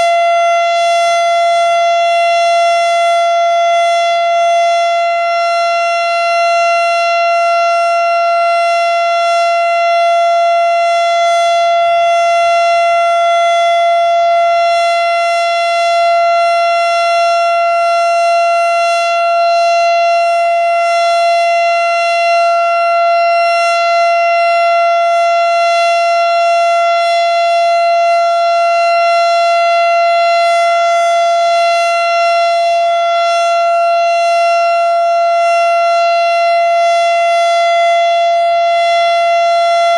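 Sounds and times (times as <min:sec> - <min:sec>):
steady warning siren tone: 0:00.0 - 0:39.9.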